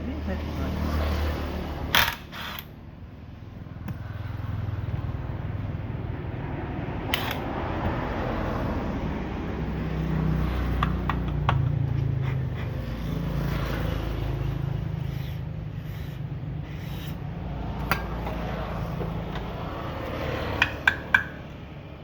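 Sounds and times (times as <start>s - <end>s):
low mechanical hum: 11.8s - 20.2s.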